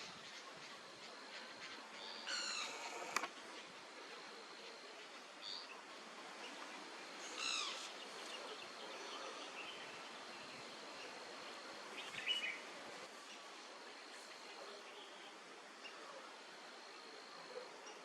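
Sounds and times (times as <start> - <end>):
steady hiss: 0.0 - 18.0
short bird calls: 2.2 - 3.3.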